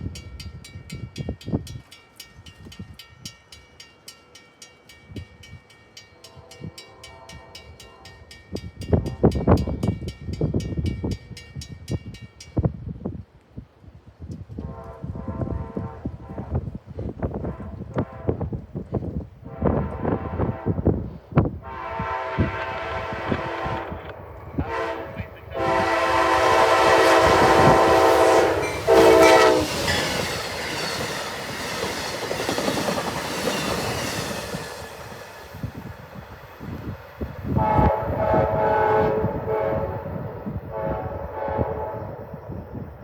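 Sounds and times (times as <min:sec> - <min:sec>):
locomotive horn blasts: 0:06.2 - 0:08.3, 0:14.6 - 0:18.6, 0:19.4 - 0:21.0, 0:21.6 - 0:30.3, 0:37.5 - 0:42.3
train wheel clatter: 0:25.6 - 0:37.4.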